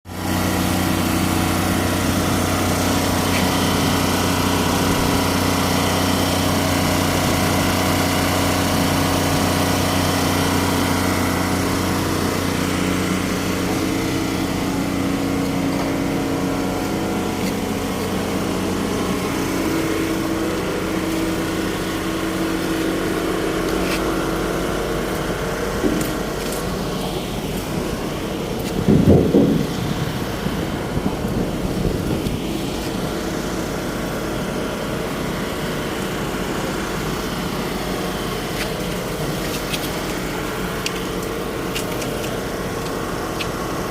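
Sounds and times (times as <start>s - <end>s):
construction machine engine hum: 0.1s - 43.9s.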